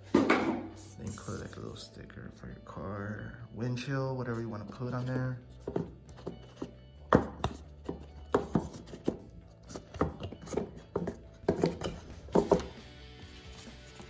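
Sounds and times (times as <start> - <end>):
handling box and packaging: 4.6 - 14.0.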